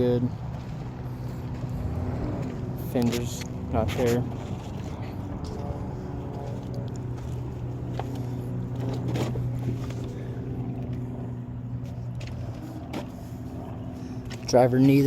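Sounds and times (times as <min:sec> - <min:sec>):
engine idling hum: 0:00.0 - 0:15.0.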